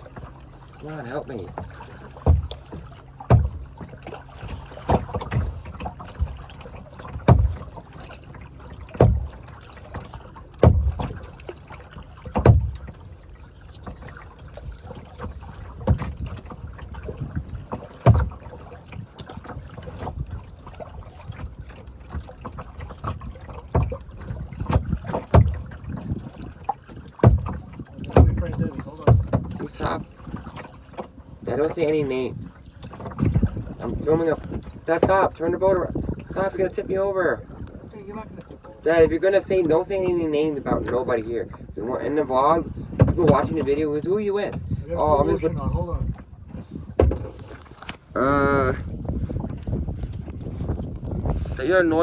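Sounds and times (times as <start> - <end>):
paddle splashing in water: 0.0 - 52.0.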